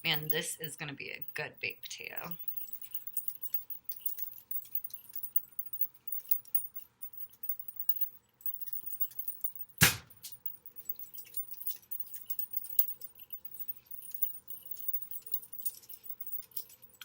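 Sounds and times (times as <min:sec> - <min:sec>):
sharp knock: 0:09.8 - 0:10.2.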